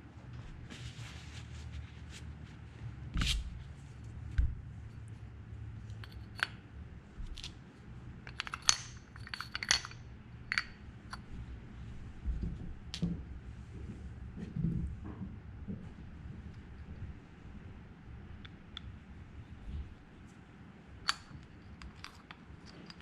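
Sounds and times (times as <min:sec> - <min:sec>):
steady low hum: 0:00.0 - 0:23.0
metal parts clinking: 0:08.2 - 0:11.2, 0:21.1 - 0:23.0.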